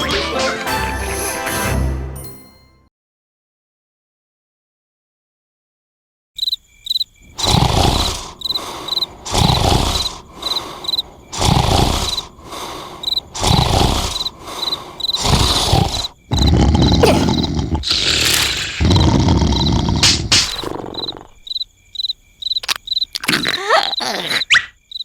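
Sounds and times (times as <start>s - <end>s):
person snoring loudly: 7.3s - 21.4s, 23.2s - 24.4s.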